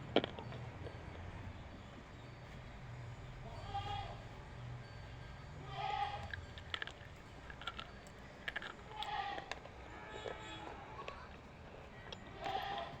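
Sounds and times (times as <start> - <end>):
crunching clicks of biting: 0.1 - 1.0, 6.3 - 10.4
animal bleating: 3.6 - 4.2, 5.6 - 6.3, 8.9 - 9.5, 12.3 - 13.0.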